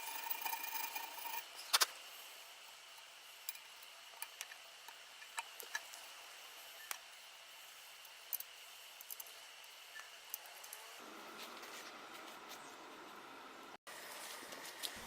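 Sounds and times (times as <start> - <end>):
metal scraping: 0.0 - 1.9.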